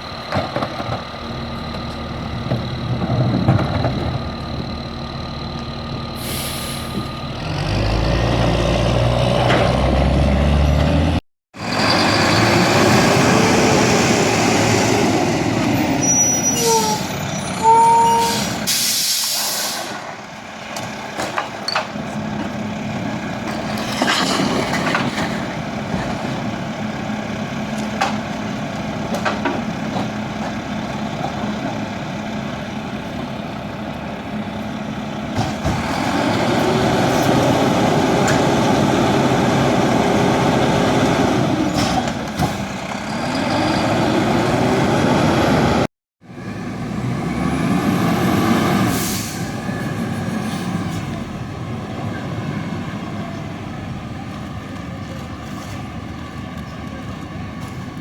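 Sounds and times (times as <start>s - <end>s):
garbage truck engine revving: 1.1s - 16.2s, 21.9s - 54.0s
air brakes hissing: 6.2s - 7.2s, 16.0s - 20.1s, 48.8s - 51.1s.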